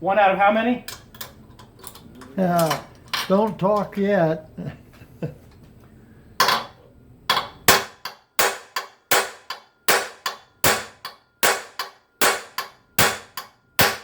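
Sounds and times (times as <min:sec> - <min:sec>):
hammer striking steel punch: 0:06.4 - 0:14.0.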